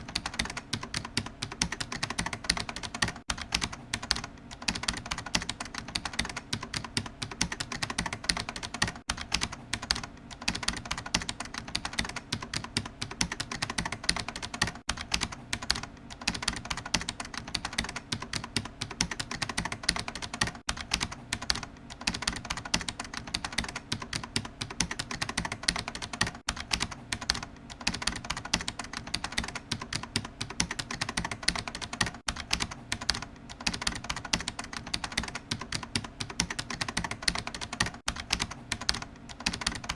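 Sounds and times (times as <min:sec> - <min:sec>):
typing on a computer keyboard: 0:00.0 - 0:39.9.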